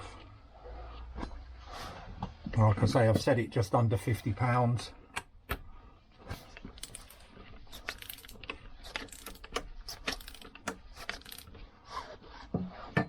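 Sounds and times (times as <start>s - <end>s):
metal tools clinking: 6.8s - 11.5s.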